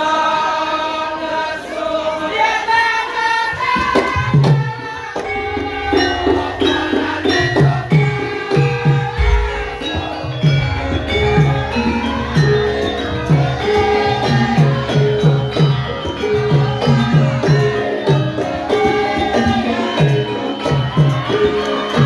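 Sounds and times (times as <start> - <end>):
sustained metallophone tones: 5.2 - 22.0
hand drum low strokes: 5.6 - 13.5.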